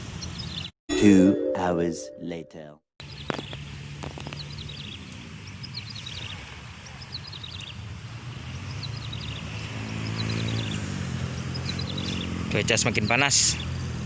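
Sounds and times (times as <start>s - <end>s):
birds chirping: 0.0s - 1.1s, 3.0s - 13.8s
vehicle engine hum: 3.0s - 14.0s.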